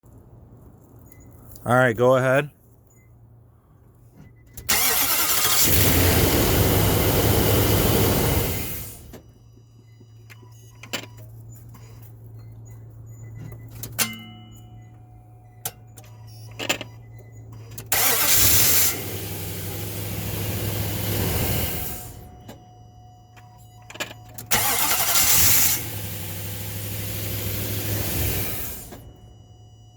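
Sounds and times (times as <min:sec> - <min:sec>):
starter cranking engine: 0:04.7 - 0:09.0, 0:17.8 - 0:20.4, 0:24.4 - 0:28.9.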